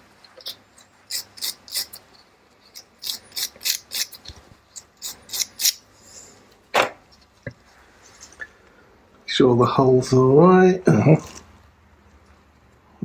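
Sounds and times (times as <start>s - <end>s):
scraping small metal parts: 0.2s - 6.3s.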